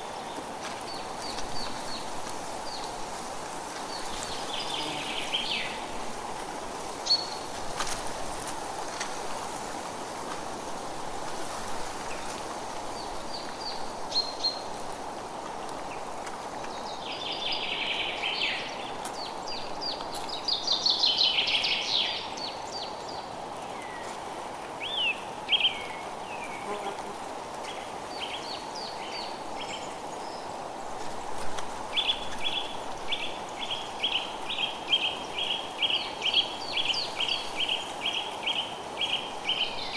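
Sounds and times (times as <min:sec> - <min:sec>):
steady background hiss: 0:00.0 - 0:39.9
songbirds calling: 0:03.9 - 0:06.0.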